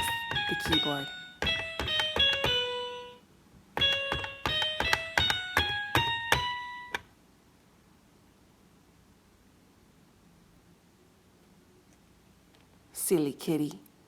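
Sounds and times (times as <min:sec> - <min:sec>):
toy keyboard beeping notes: 0:00.0 - 0:03.2, 0:03.8 - 0:07.0.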